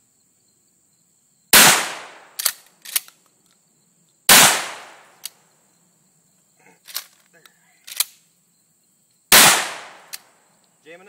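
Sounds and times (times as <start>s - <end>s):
shotgun shots with echo: 1.6s - 2.4s, 4.3s - 5.1s, 9.3s - 10.1s
shotgun action clicks: 1.9s - 3.3s, 4.4s - 5.4s, 6.9s - 7.2s, 7.8s - 8.2s, 9.4s - 10.3s.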